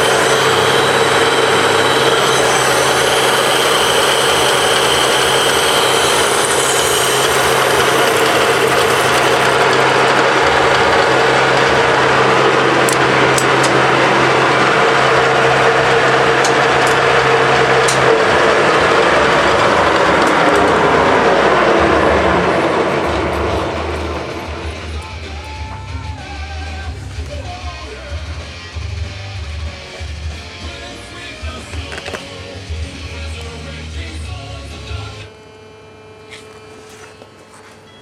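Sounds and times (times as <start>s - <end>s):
metal lathe running: 0.0s - 37.4s.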